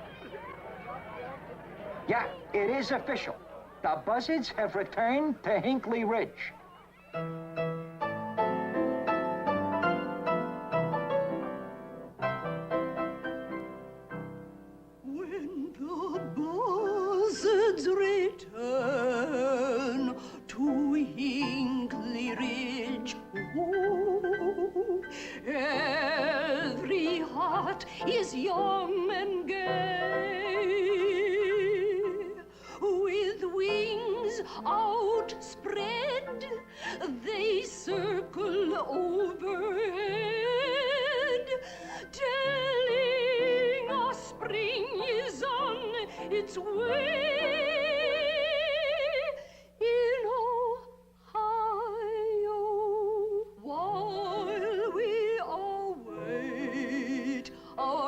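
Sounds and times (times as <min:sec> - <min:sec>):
musical accompaniment: 0:06.6 - 0:48.7
woman singing operatically: 0:15.0 - 0:58.0.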